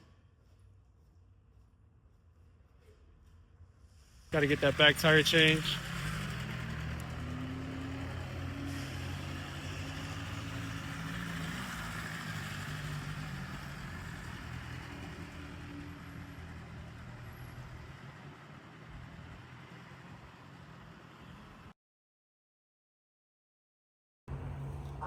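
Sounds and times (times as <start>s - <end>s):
vehicle engine running at low revs: 3.8s - 21.7s.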